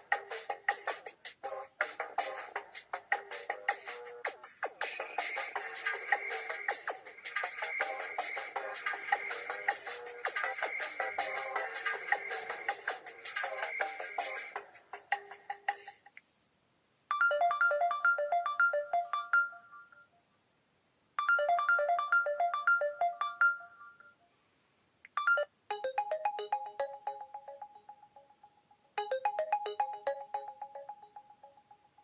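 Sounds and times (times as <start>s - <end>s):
electronic plucked ringtone melody: 17.1s - 20.1s, 21.2s - 24.2s, 25.2s - 32.0s
chiming ringtone melody: 17.1s - 20.2s, 21.2s - 24.2s, 25.2s - 32.0s.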